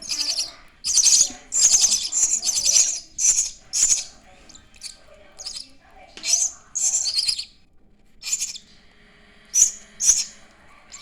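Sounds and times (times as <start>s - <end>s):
chicks hissing begging calls: 0.0s - 4.6s, 5.4s - 5.7s, 6.3s - 7.5s, 8.2s - 8.7s, 9.5s - 11.0s.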